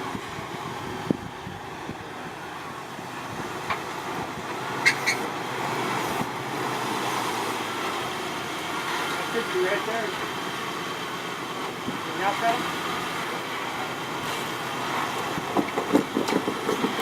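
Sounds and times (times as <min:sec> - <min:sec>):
engine running: 0:00.0 - 0:17.0
sharp knocks: 0:15.4 - 0:17.0.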